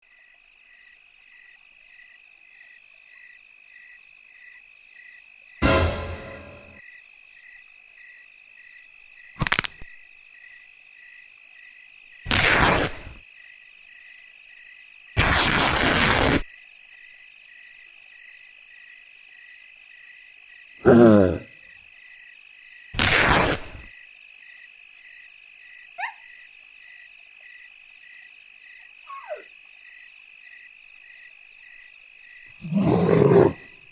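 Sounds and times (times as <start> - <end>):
crickets chirping: 0.0 - 5.6, 6.8 - 15.2, 16.4 - 23.0, 23.9 - 33.9
loud sound effect bursts: 5.6 - 6.8.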